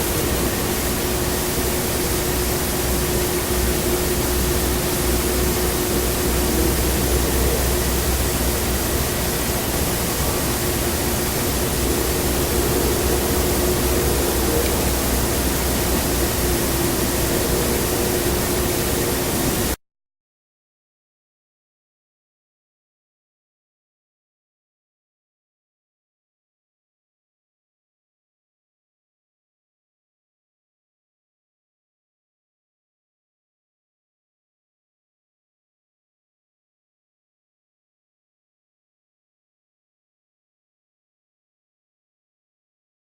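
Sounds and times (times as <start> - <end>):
recording hiss: 0.0 - 19.8.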